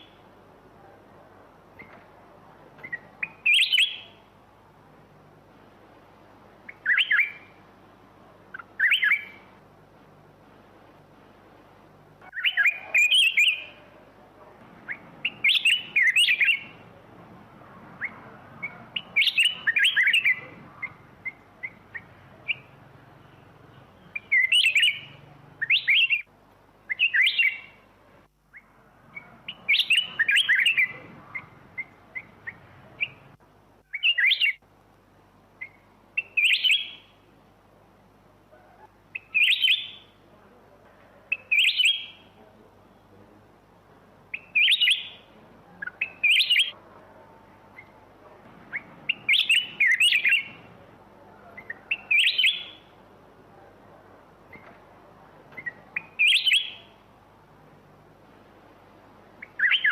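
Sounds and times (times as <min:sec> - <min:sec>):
bird singing warbled phrases: 0:02.6 - 0:04.4, 0:06.6 - 0:07.6, 0:08.3 - 0:09.6, 0:12.2 - 0:27.9, 0:28.5 - 0:34.6, 0:35.6 - 0:37.3, 0:38.6 - 0:40.2, 0:41.3 - 0:43.1, 0:44.2 - 0:57.1, 0:59.3 - 0:59.9.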